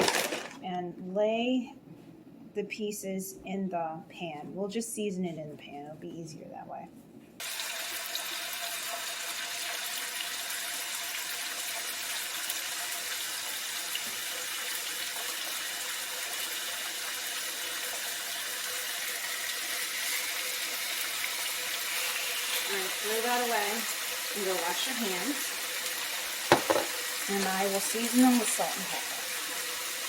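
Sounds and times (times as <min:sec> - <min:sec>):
meat sizzling in a hot pan: 0:07.4 - 0:30.0.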